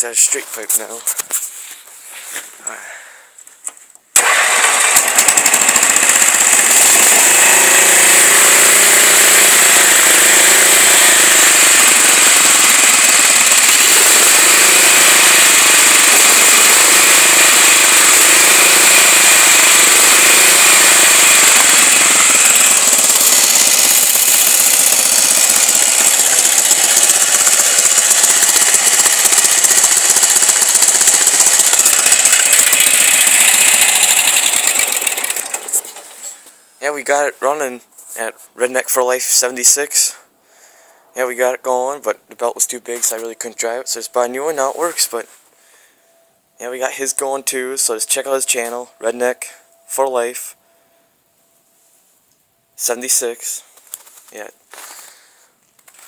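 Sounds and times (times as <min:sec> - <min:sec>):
small gasoline engine running: 0:04.2 - 0:36.2.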